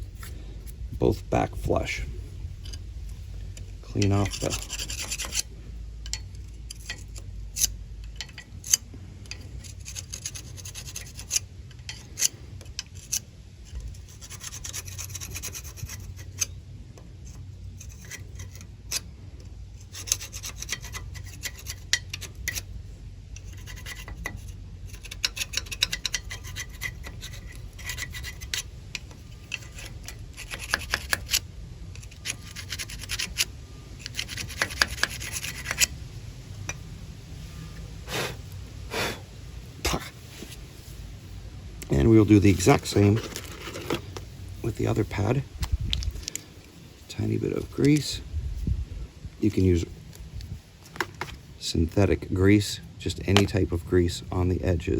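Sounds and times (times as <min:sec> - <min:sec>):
scraping and rubbing: 0:00.0 - 0:16.6, 0:17.2 - 0:19.1, 0:19.7 - 0:22.8, 0:23.4 - 0:36.0, 0:39.8 - 0:48.8
metal parts clicking: 0:03.5 - 0:16.5, 0:23.3 - 0:36.0.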